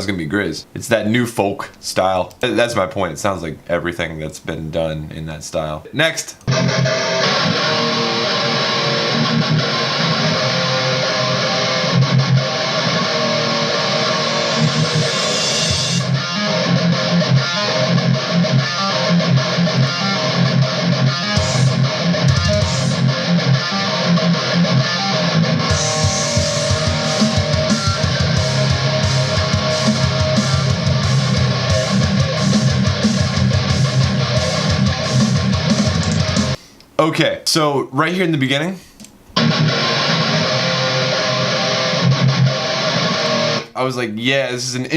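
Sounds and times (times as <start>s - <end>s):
rock song with electric guitar: 6.5s - 36.6s, 39.4s - 43.7s.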